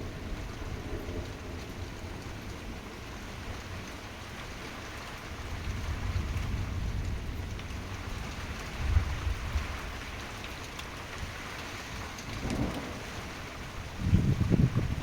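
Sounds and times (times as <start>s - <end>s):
heavy rain pouring: 0.0s - 15.0s
thunder rumble: 12.0s - 15.0s.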